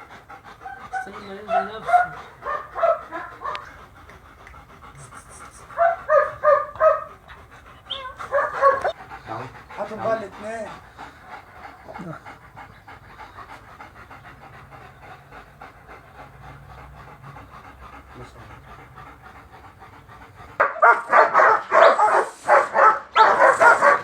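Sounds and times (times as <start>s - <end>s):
dog panting: 0.0s - 24.0s
dog barking: 0.7s - 3.7s, 5.8s - 7.1s, 7.9s - 9.0s, 20.6s - 24.0s.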